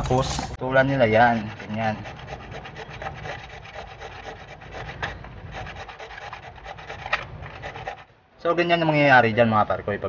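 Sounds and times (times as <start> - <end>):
plastic pipe being sawn: 1.1 - 8.1.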